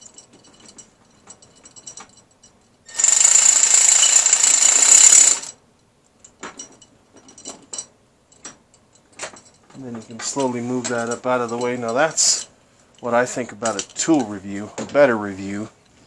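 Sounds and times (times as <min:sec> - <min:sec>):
fast ratcheting rattle: 0:02.9 - 0:05.5
ratchet clicking: 0:02.9 - 0:05.5.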